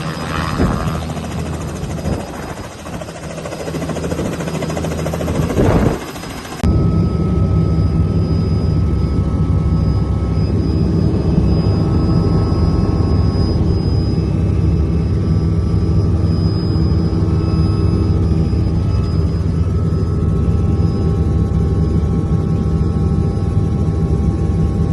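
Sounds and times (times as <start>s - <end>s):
helicopter drone with high whine: 0.0s - 24.9s.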